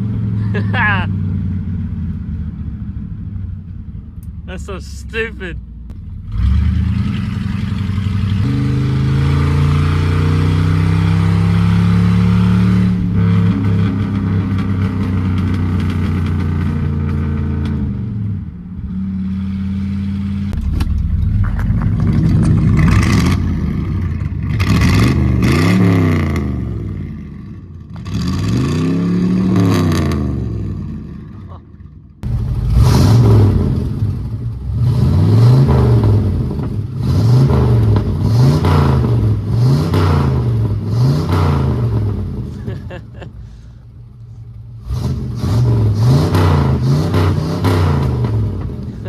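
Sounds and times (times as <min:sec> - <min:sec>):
vehicle engine accelerating hard: 0:00.0 - 0:43.8, 0:44.5 - 0:49.0
exhaust pops and crackles: 0:04.2 - 0:09.8, 0:13.2 - 0:18.2, 0:20.4 - 0:25.8, 0:35.6 - 0:43.3, 0:47.6 - 0:49.0
engine revving: 0:04.2 - 0:31.6, 0:32.2 - 0:43.2, 0:44.8 - 0:49.0.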